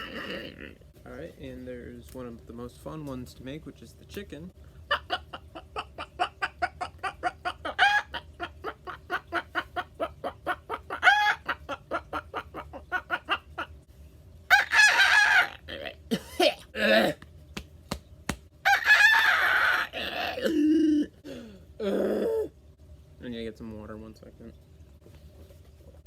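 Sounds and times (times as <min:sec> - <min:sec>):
man imitating chicken clucks: 0:04.9 - 0:13.8, 0:18.7 - 0:21.1.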